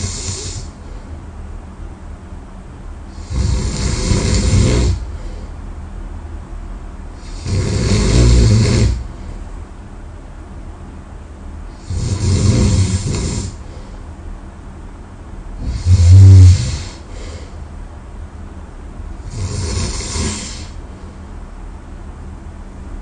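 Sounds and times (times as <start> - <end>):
person snoring loudly: 0.0 - 0.7, 3.2 - 5.1, 7.2 - 9.1, 11.8 - 13.6, 15.6 - 17.3, 19.2 - 20.8.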